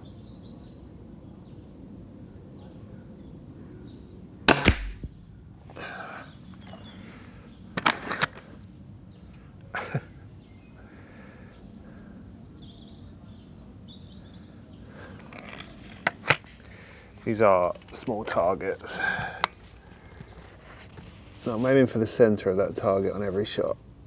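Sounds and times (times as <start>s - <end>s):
air rifle action clicks: 4.5s - 5.1s, 7.8s - 8.6s, 15.0s - 16.7s.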